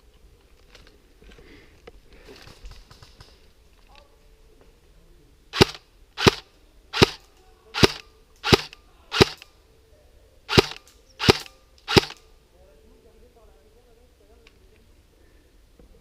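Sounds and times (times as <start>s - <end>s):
airsoft gun single shots: 5.6s - 6.4s, 7.0s - 7.2s, 7.8s - 9.4s, 10.5s - 12.2s.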